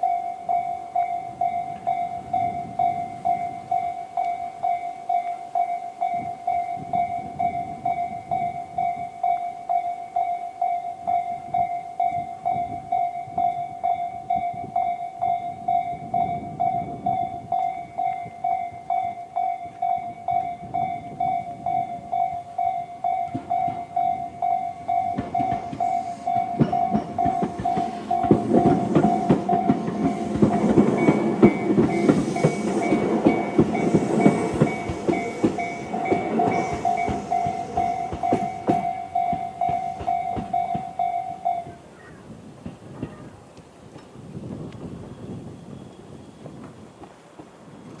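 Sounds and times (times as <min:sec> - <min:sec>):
level crossing warning bell: 0:00.0 - 0:41.9
train wheels clacking over rail joints: 0:23.2 - 0:24.2, 0:24.9 - 0:41.8, 0:42.6 - 0:43.2.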